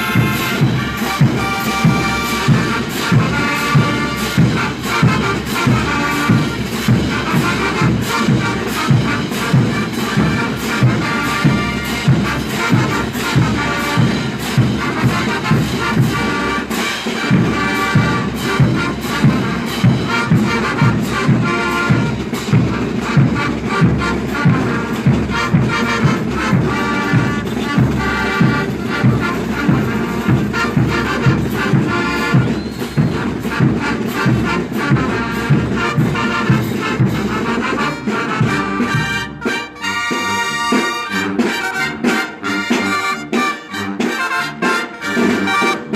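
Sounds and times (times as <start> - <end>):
brass band playing: 0.0 - 45.9.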